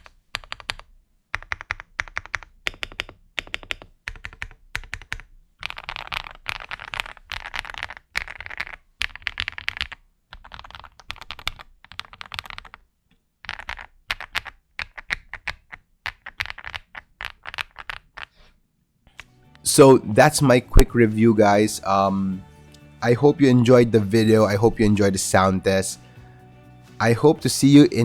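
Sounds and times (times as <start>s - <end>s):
fast typing on mechanical keyboard: 0.0s - 12.8s, 13.5s - 18.3s.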